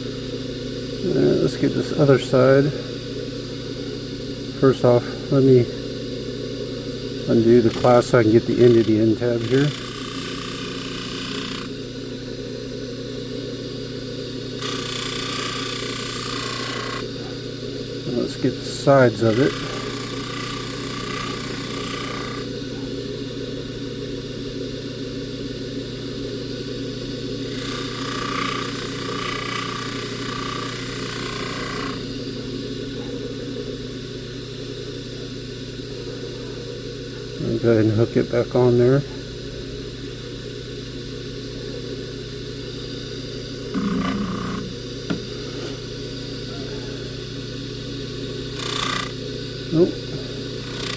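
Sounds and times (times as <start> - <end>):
polishing motor humming: 0.0 - 50.9
chain hissing on buffing wheel: 7.3 - 11.7, 18.1 - 22.7, 27.6 - 32.3.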